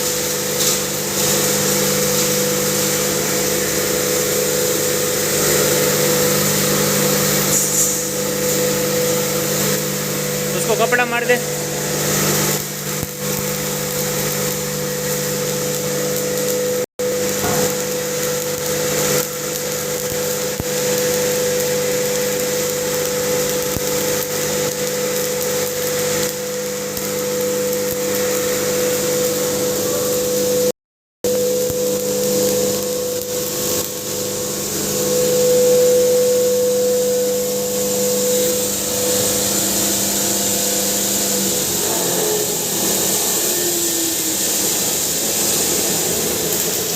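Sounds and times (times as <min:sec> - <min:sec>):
electric pulverizer grinding: 0:00.0 - 0:30.6, 0:31.3 - 0:46.9.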